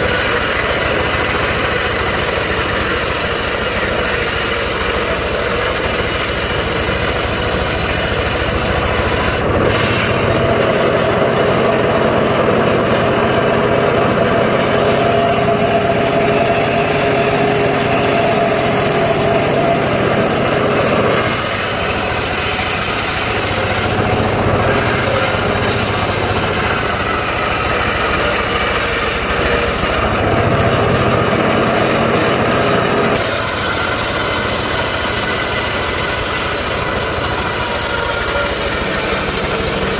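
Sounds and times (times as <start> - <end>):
circular saw running: 0.0 - 39.9.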